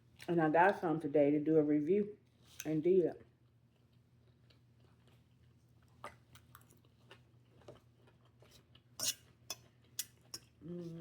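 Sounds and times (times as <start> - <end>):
chewing salad: 2.3 - 11.0.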